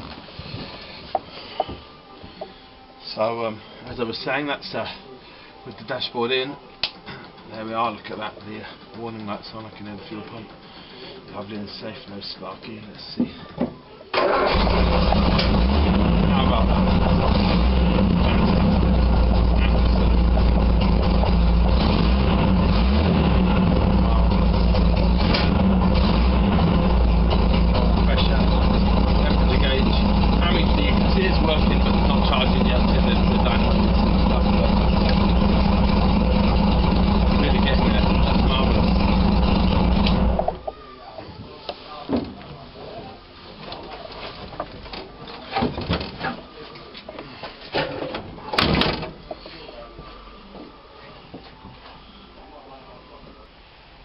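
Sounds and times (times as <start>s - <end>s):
car engine idling: 14.3s - 40.7s
mechanical clunks and rattles: 47.8s - 49.2s.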